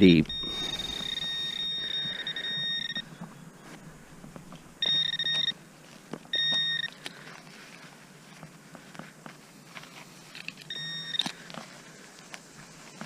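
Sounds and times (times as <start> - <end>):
metal detector high tone: 0.0 - 5.6, 6.3 - 7.0, 10.6 - 11.3.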